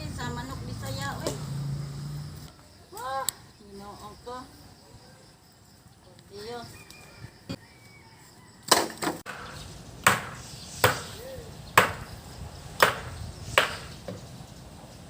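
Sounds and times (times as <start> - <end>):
tool striking wood: 8.7 - 11.2, 11.8 - 12.1, 12.8 - 13.9.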